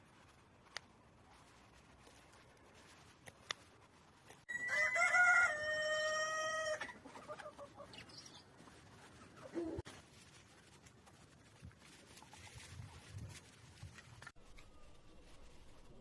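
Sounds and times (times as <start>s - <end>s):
rooster crowing: 4.5s - 6.9s.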